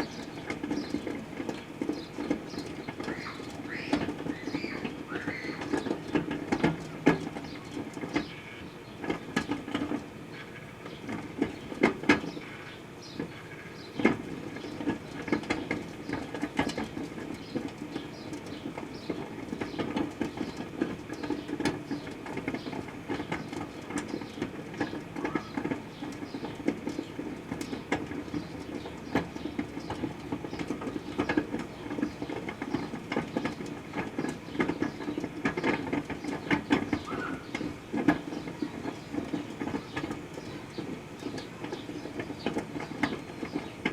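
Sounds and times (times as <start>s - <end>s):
microwave oven humming: 0.0s - 43.9s.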